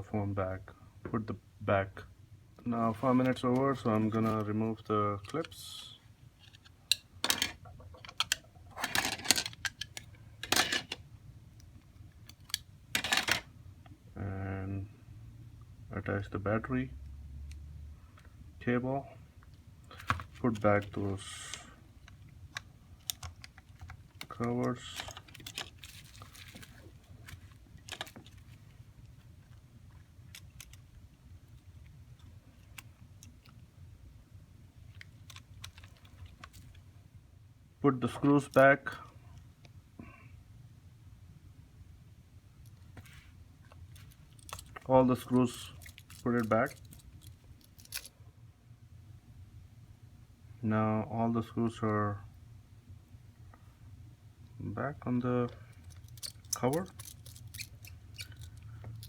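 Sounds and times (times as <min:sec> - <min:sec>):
low steady hum: 0:00.0 - 0:59.0
small phone parts clicking: 0:30.3 - 0:30.8, 0:45.8 - 0:48.1, 0:55.8 - 0:59.0.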